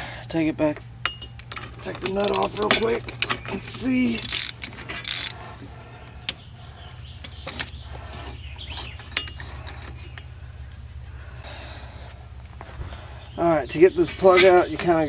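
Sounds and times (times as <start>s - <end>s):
ratchet wrench clicking: 1.0s - 5.4s
metal parts clinking: 1.0s - 6.4s, 7.1s - 11.0s
rasping: 1.9s - 13.1s.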